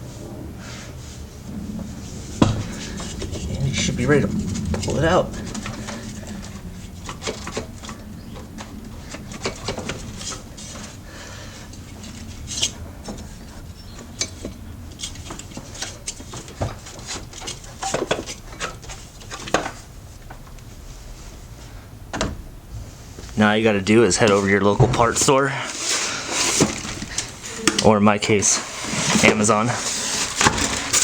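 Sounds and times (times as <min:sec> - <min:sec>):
metal clinks and scraping: 0:24.3 - 0:31.0.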